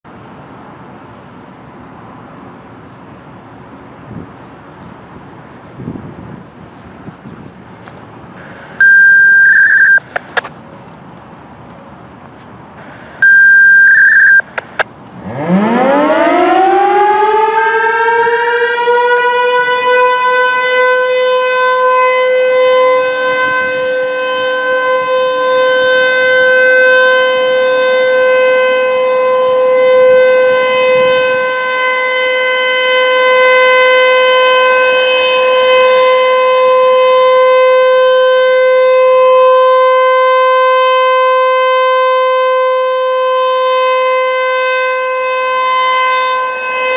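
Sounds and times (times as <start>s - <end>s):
loud short beep: 8.8s - 10.1s, 13.2s - 14.8s
warning siren winding up: 8.8s - 10.5s, 13.2s - 28.2s.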